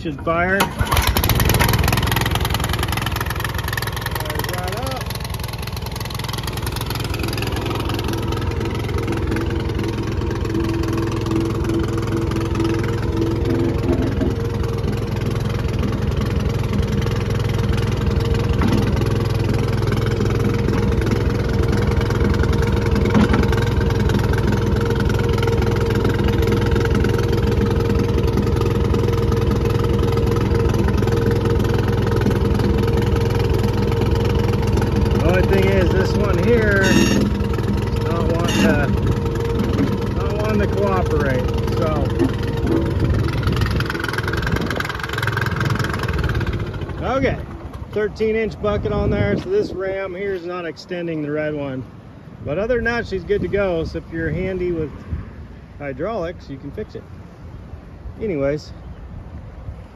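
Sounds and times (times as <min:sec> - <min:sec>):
small engine running steadily: 0:00.0 - 0:59.9
high steady tone: 0:35.2 - 0:44.4.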